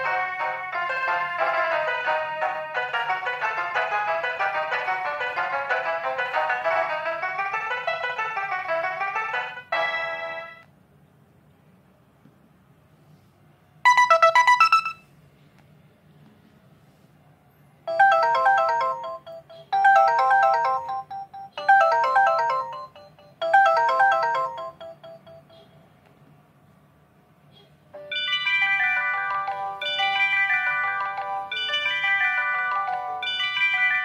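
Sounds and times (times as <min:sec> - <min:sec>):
phone ringtone: 0:13.9 - 0:15.1, 0:17.9 - 0:25.6, 0:28.0 - 0:34.0.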